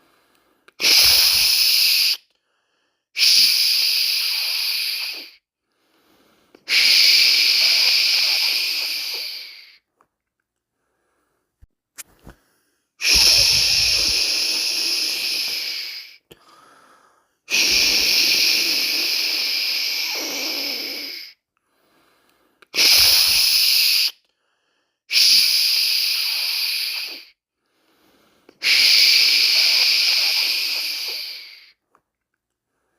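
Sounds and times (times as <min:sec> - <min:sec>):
person shushing a baby: 0:00.8 - 0:02.2, 0:03.2 - 0:05.4, 0:06.7 - 0:09.8, 0:13.0 - 0:16.2, 0:22.8 - 0:24.2, 0:28.6 - 0:31.7.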